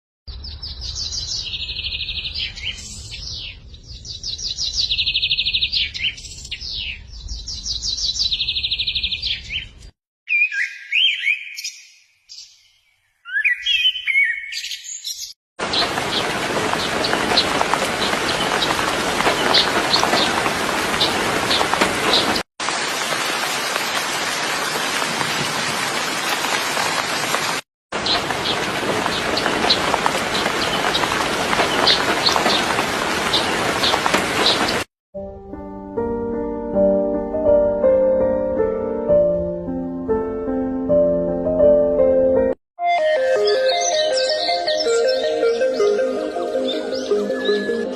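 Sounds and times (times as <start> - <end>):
songbirds singing: 0.3 - 22.4, 28.0 - 34.9, 43.4 - 47.9.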